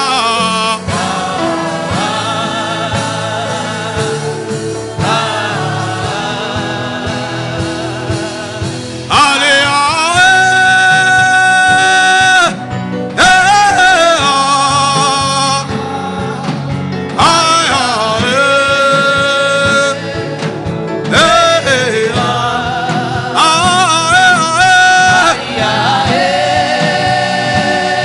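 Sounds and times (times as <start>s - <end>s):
instrumental backing music: 0.0s - 28.0s.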